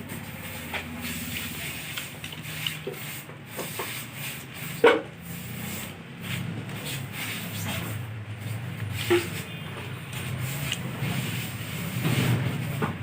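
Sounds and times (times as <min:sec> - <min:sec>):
metal parts scraping and clinking: 0:01.4 - 0:02.9.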